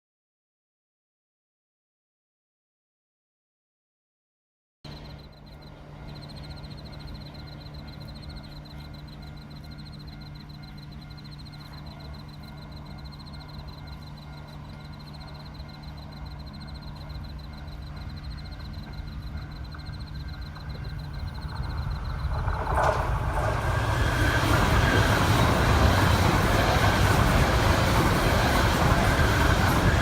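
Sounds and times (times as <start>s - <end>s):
approaching train rumble: 4.9s - 30.0s
insects trilling: 4.9s - 30.0s
low hum: 4.9s - 30.0s.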